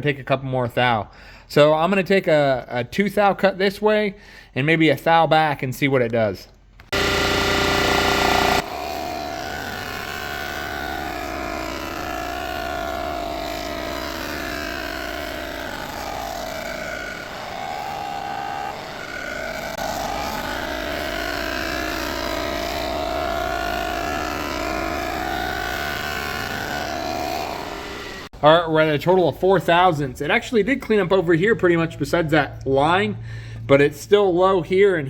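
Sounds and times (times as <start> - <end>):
machine cutter surfacing metal: 6.9 - 28.3.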